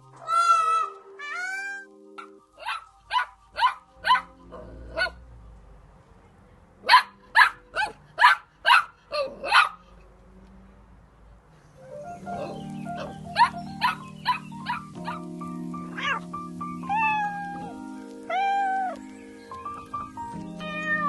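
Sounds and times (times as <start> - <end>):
dog barking: 2.2 - 5.2, 6.8 - 9.8, 12.4 - 15.2.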